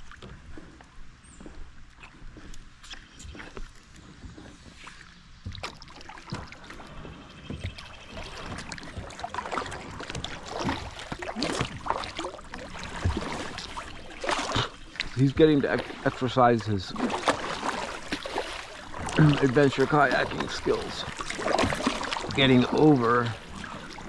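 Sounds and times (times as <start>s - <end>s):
paddle splashing in water: 1.5s - 24.0s
water dripping: 5.4s - 24.0s.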